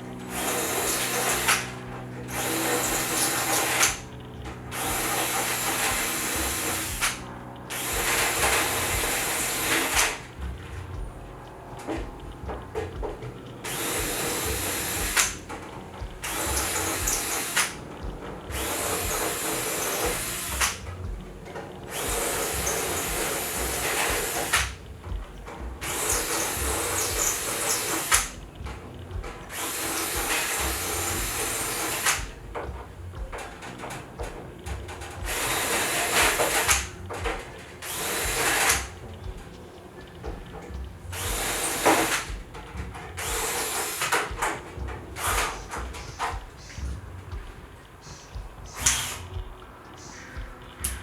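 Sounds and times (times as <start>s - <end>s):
power drill bursts: 0.0s - 49.5s.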